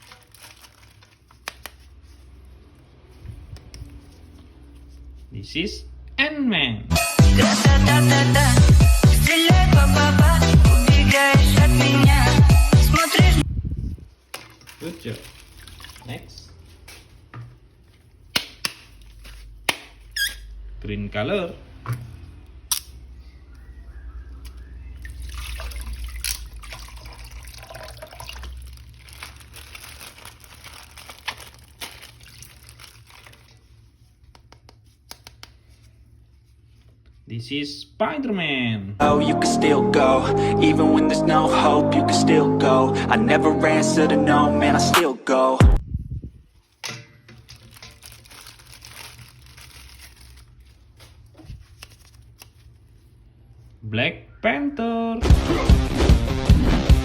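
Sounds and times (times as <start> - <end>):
packaging tearing: 0.0 - 2.0, 28.5 - 33.6, 47.4 - 52.8
packaging crinkling and rustling: 0.0 - 5.2, 14.2 - 20.1, 27.6 - 34.2, 46.5 - 53.2
water running and splashing: 14.3 - 16.2, 25.0 - 29.4.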